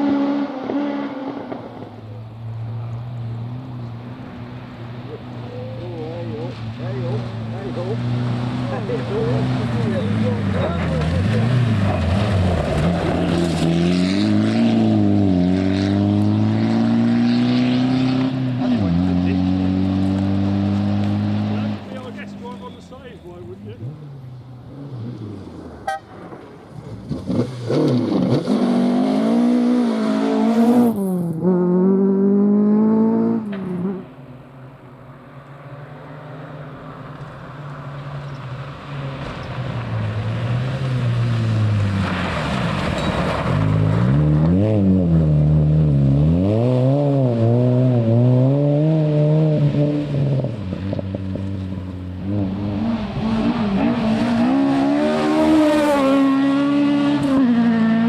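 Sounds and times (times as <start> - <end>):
rally car engines revving: 0.0 - 58.0.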